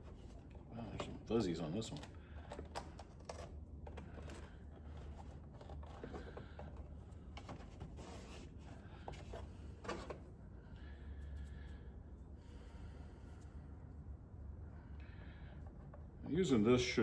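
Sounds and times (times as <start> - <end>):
steady low hum: 8.7 - 17.0.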